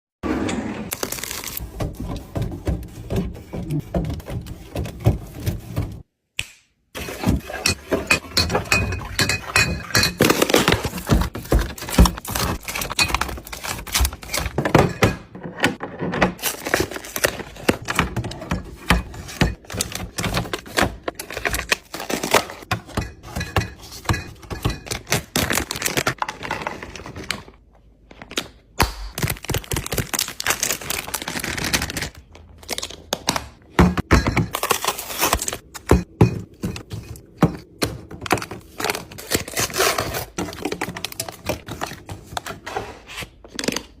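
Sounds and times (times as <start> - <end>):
bottles and cans clinking on shelves: 7.0 - 26.1, 33.7 - 39.2.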